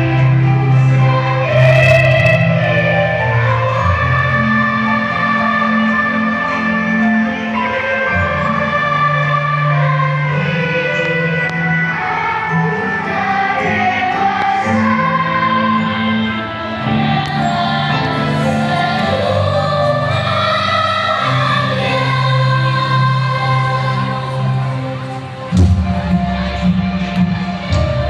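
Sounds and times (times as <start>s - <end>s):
choir singing held notes: 0.0s - 28.0s.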